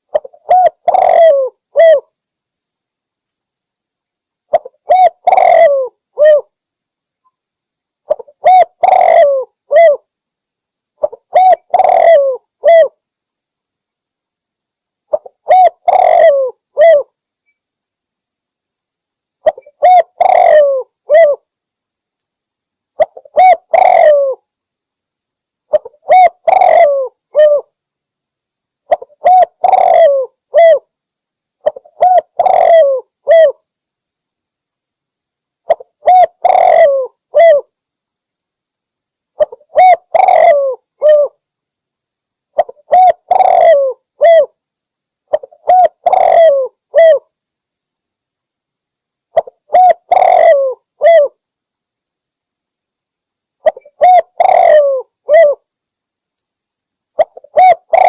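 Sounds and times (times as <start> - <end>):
dove cooing: 0.0 - 2.1, 4.5 - 6.5, 8.1 - 10.1, 11.0 - 13.0, 15.1 - 17.1, 19.4 - 21.4, 23.0 - 24.4, 25.7 - 27.7, 28.9 - 30.9, 31.6 - 33.6, 35.7 - 37.7, 39.4 - 41.4, 42.6 - 44.5, 45.3 - 47.2, 49.4 - 51.4, 53.6 - 55.6, 57.2 - 58.0.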